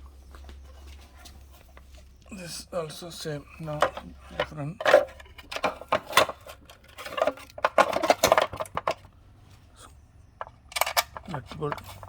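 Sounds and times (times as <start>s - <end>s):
small metal parts clattering: 3.7s - 9.1s, 10.4s - 12.0s.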